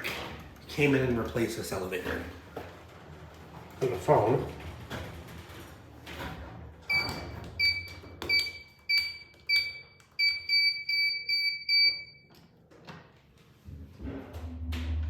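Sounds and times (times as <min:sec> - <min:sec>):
elevator button beeps: 0:06.9 - 0:12.3.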